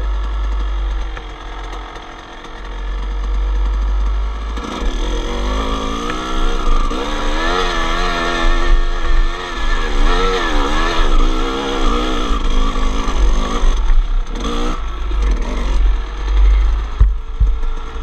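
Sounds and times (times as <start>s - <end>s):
dirt bike engine revving: 0.0s - 18.0s
heavy low rumble: 11.4s - 18.0s.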